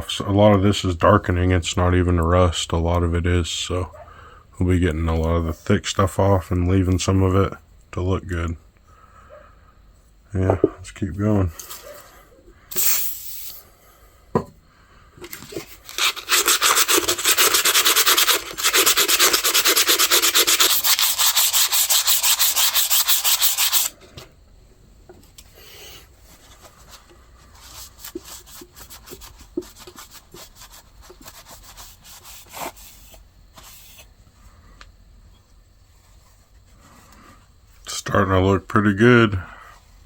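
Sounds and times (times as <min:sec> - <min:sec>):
sandpaper scrubbing steel: 0:15.9 - 0:23.9, 0:27.6 - 0:34.1.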